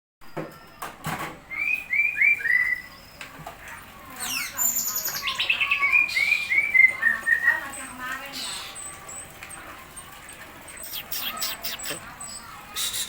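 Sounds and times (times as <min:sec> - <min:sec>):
bird high chattering: 0:04.1 - 0:13.0
bird whistled notes: 0:10.8 - 0:13.0.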